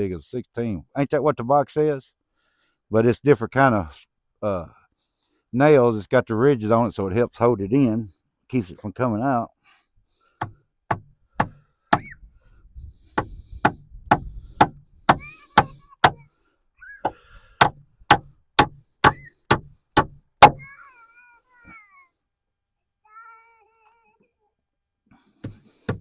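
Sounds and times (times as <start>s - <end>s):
hammer driving nails into wood: 10.4s - 12.0s, 13.1s - 16.2s, 17.1s - 20.6s, 25.4s - 26.0s.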